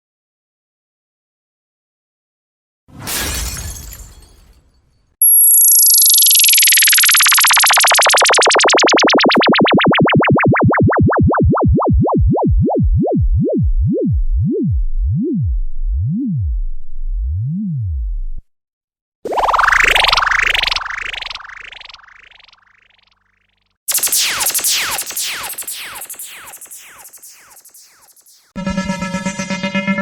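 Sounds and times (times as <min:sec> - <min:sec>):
electronic tone wobbling in pitch: 0:05.2 - 0:16.8, 0:24.2 - 0:30.0.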